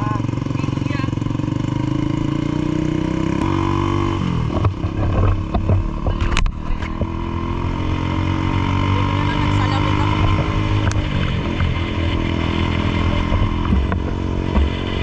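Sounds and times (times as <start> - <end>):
engine running: 0.0 - 15.0
knocks and clicks: 13.2 - 15.0.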